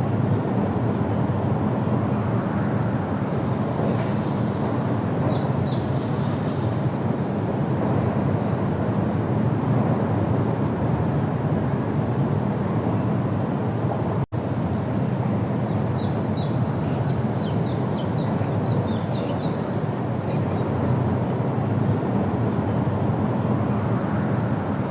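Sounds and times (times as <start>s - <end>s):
low rushing background noise: 0.0s - 24.9s.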